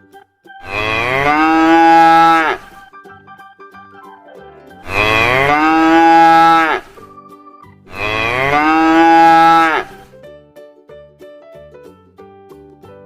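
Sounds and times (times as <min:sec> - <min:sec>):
soft background music: 0:00.0 - 0:13.0
cow mooing: 0:00.6 - 0:02.8, 0:04.8 - 0:07.0, 0:07.9 - 0:10.1.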